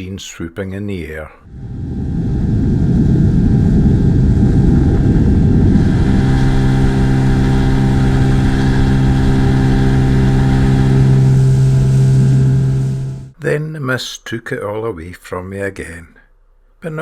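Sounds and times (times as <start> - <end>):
outboard motor running: 3.8 - 13.3.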